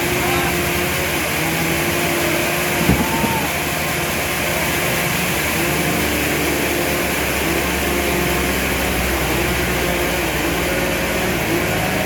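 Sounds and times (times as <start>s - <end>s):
short knock: 2.8s - 3.6s.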